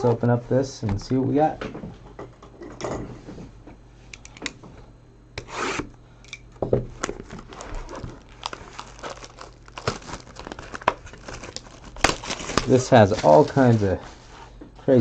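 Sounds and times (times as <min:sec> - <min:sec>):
cardboard tearing: 0:07.2 - 0:13.5.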